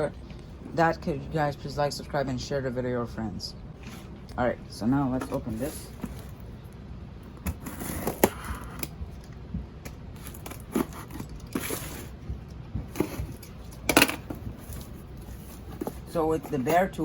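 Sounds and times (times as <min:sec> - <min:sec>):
cardboard rustling and tearing: 0:07.4 - 0:08.9, 0:10.1 - 0:12.2, 0:12.9 - 0:17.0.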